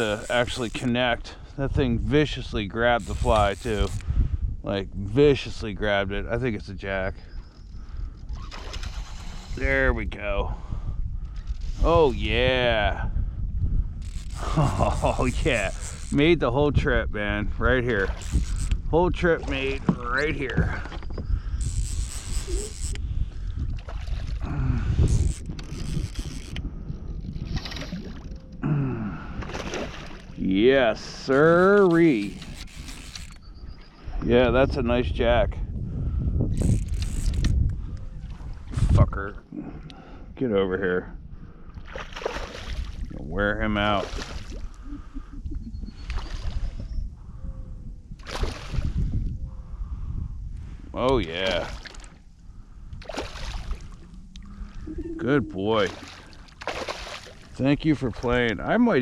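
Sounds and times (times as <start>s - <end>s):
water sloshing around kayak: 0.0s - 1.3s, 18.0s - 26.6s, 27.2s - 28.6s, 29.2s - 30.4s, 41.6s - 46.9s, 51.2s - 52.3s, 52.9s - 58.8s
kayak and gear creaking: 0.0s - 4.4s, 6.9s - 10.2s, 11.1s - 12.8s, 13.8s - 16.4s, 17.7s - 34.4s, 36.3s - 40.0s, 50.5s - 59.0s
short squeaky glides: 7.2s - 9.7s, 20.0s - 23.0s, 31.2s - 34.2s
steady low rumble: 51.7s - 59.0s.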